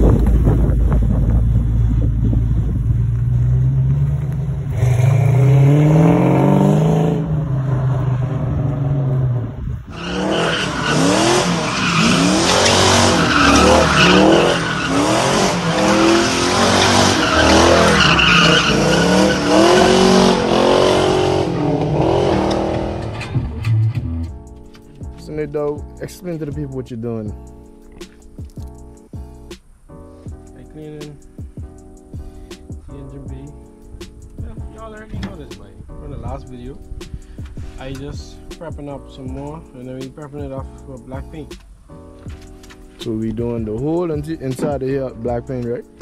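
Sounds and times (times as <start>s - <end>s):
car engine revving: 0.0s - 25.0s
tyre squeal: 9.9s - 21.6s.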